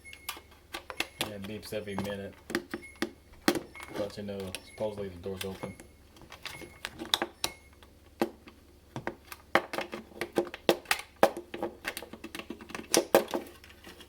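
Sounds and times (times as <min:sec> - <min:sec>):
clicks and taps of plastic parts: 0:00.1 - 0:04.7, 0:05.3 - 0:14.0.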